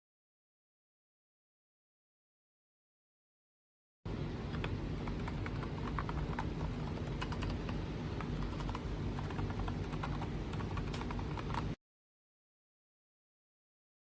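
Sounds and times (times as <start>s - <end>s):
steady low hum: 4.1s - 11.8s
mechanical keyboard typing: 4.5s - 11.8s.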